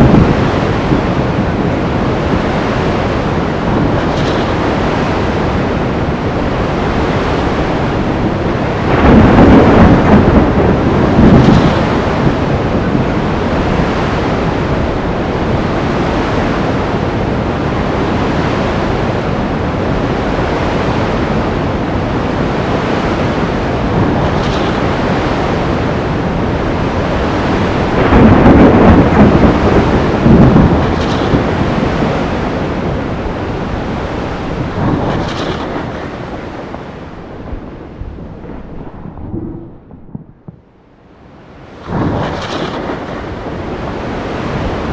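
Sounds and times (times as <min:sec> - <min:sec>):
surf: 0:00.0 - 0:39.9, 0:41.2 - 0:44.9
rain: 0:00.0 - 0:44.9
rumbling thunder: 0:00.0 - 0:44.9
loud thunder crash: 0:06.1 - 0:16.9, 0:23.8 - 0:40.9, 0:41.8 - 0:43.9.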